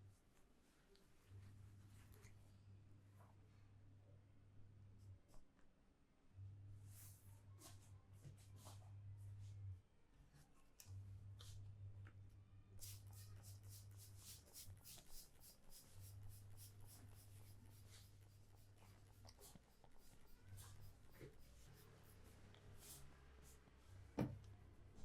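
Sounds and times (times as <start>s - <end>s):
hands rubbing hair and scalp: 12.8s - 23.6s.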